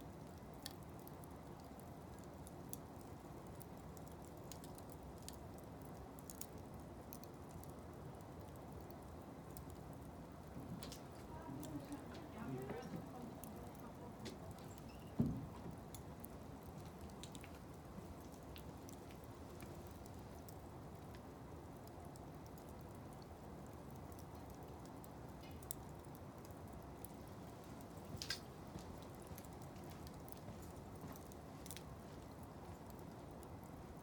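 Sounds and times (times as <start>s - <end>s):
wood fire crackling and popping: 0.0s - 34.0s
fire hissing: 9.2s - 21.5s.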